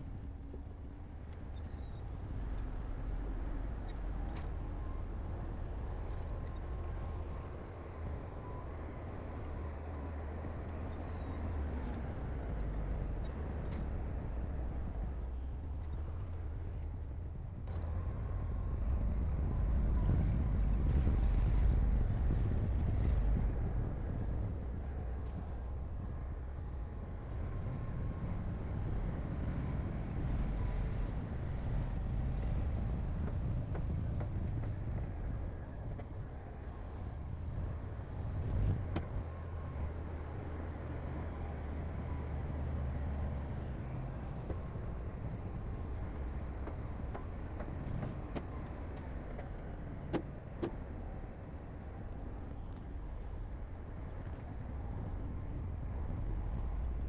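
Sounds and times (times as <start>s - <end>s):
diesel engine running low: 0.0s - 57.0s.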